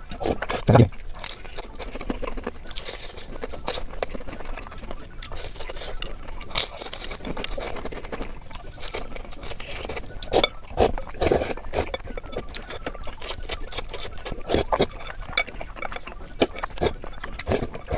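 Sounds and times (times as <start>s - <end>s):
person chewing: 0.0s - 17.9s.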